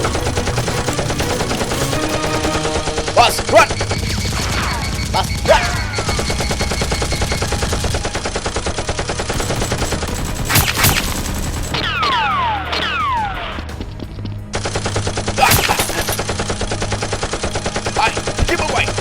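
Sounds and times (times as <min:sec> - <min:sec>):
rapid automatic gunfire: 0:00.0 - 0:12.0.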